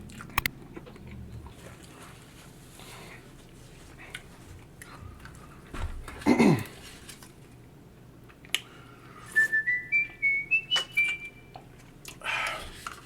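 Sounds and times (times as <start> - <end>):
chewing: 0.0 - 2.6, 3.4 - 5.7, 11.0 - 13.0.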